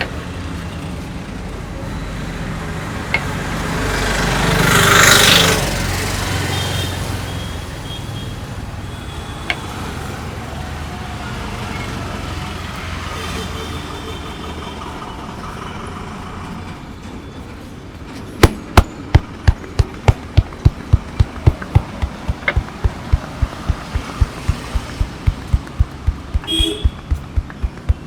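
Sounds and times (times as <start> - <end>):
street traffic hum: 18.0 - 28.0
hands thumping on body: 18.4 - 28.0.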